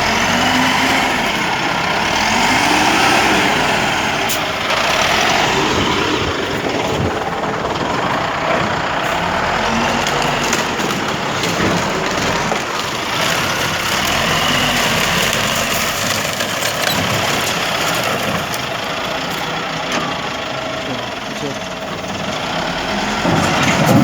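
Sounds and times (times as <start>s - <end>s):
diesel loader engine running: 0.0s - 24.0s
debris scraping and knocking: 4.4s - 20.1s, 22.9s - 24.0s.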